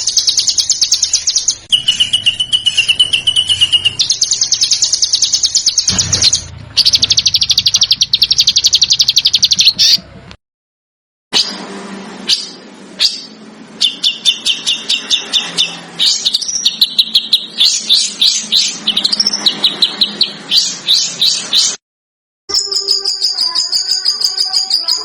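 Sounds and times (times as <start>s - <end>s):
different bird call: 0.0s - 10.0s
songbird call: 0.0s - 10.0s.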